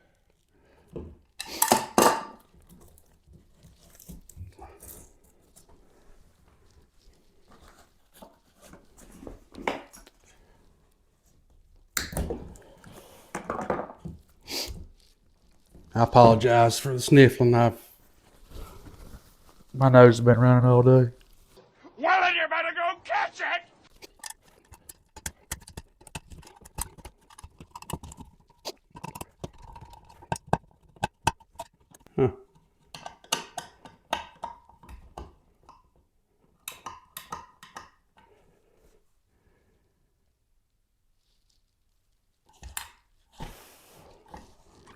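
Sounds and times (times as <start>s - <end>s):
person sniffing: 14.4s - 14.8s.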